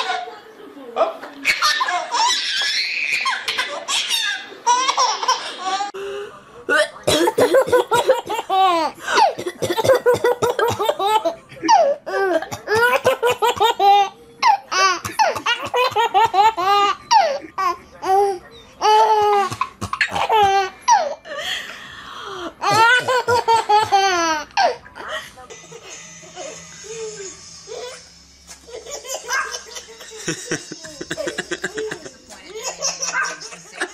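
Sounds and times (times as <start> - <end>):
baby laughing hard: 1.5 - 5.9, 10.0 - 21.2, 22.6 - 24.8, 28.7 - 33.9.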